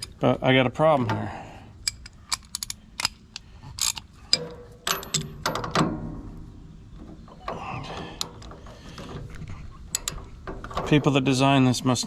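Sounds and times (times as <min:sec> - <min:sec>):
wrench clinking on metal: 0:03.8 - 0:05.7.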